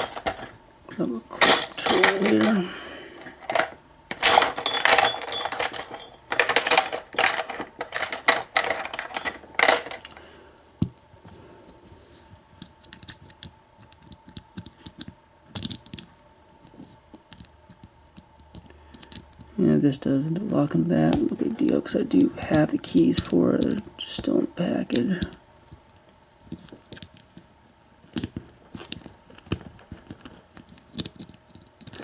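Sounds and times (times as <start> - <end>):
metal lock parts clicking: 0.0 - 0.6, 1.4 - 2.6, 3.2 - 10.2.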